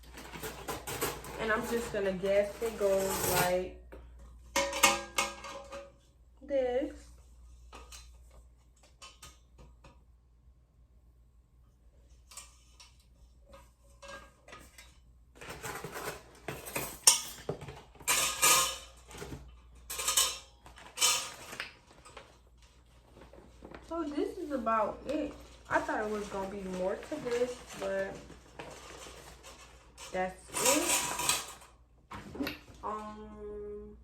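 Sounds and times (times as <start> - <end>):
metallic rattles and scrapes: 0.0 - 3.7, 12.2 - 22.4, 24.5 - 31.8.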